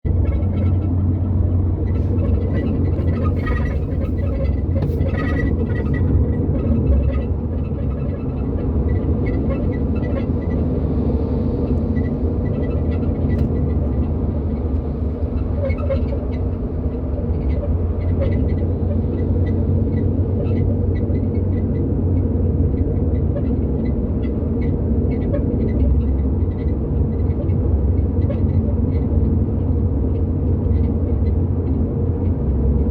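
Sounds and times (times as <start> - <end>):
road and engine rumble: 0.0 - 32.9
car rear squeaks: 1.8 - 10.7, 11.6 - 21.6.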